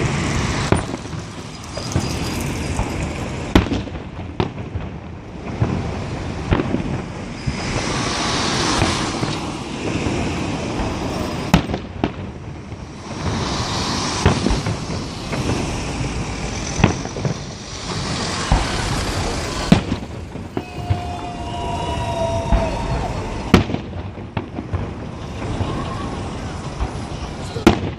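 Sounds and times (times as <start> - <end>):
firework shells bursting: 0.0 - 4.9, 5.5 - 27.9
firework crackling: 0.0 - 27.9
steady tones: 12.5 - 24.2.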